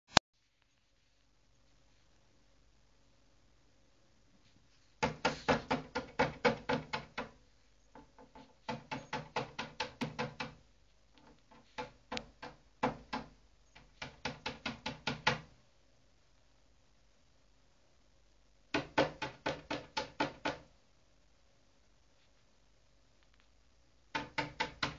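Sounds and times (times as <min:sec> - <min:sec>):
parrot beak tapping on monitor: 0:05.0 - 0:07.4, 0:08.0 - 0:10.6, 0:11.2 - 0:15.5, 0:18.7 - 0:20.7, 0:24.1 - 0:24.9.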